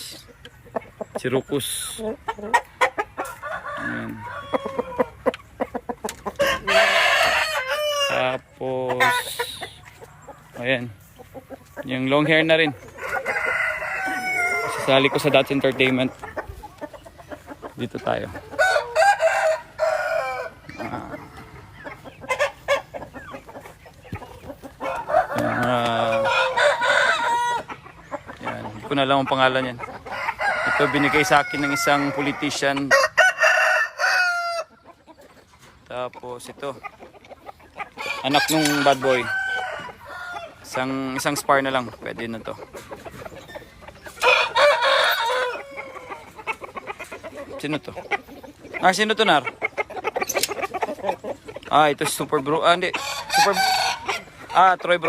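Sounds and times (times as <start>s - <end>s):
clucks and clicks: 0.0s - 6.6s, 15.0s - 18.6s, 34.7s - 40.0s, 45.6s - 55.0s
rooster crowing: 3.4s - 5.2s, 6.4s - 8.1s, 13.0s - 15.5s, 18.6s - 20.7s, 24.8s - 27.7s, 30.1s - 34.7s, 38.0s - 40.6s, 44.2s - 46.3s, 52.9s - 54.2s.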